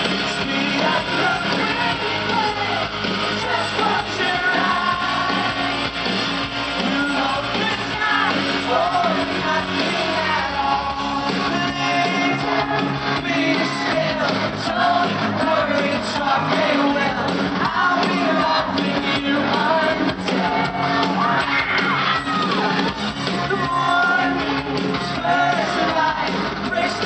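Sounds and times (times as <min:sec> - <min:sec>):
drums: 0:00.0 - 0:27.0
guitars: 0:00.0 - 0:27.0
person singing lead vocals: 0:00.0 - 0:27.0.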